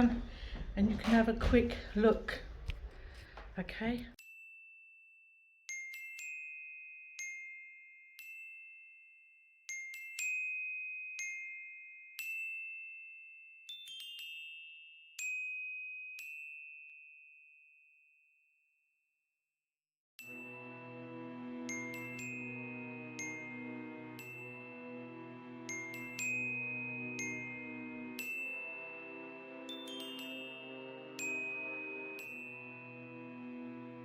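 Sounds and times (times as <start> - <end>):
music box melody: 5.7 - 17.4, 21.6 - 33.5
sustained musical passage: 26.6 - 34.0.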